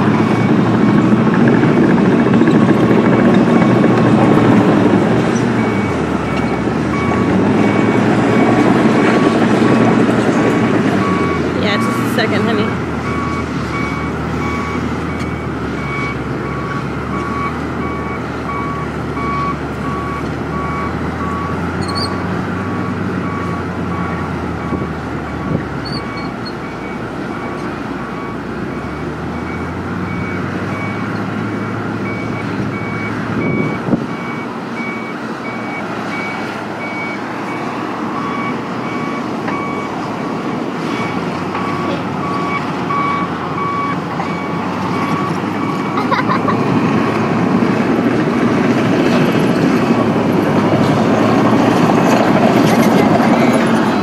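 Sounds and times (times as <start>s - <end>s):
excavator diesel engine running: 0.0s - 54.0s
travel alarm beeping: 5.6s - 9.4s, 11.0s - 22.2s, 22.8s - 27.6s, 31.6s - 46.3s.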